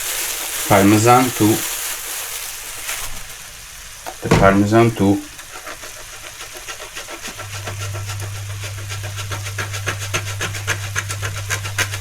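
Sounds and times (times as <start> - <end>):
cheese grating: 0.0 - 3.3, 5.0 - 12.0
steady low hum: 7.4 - 12.0.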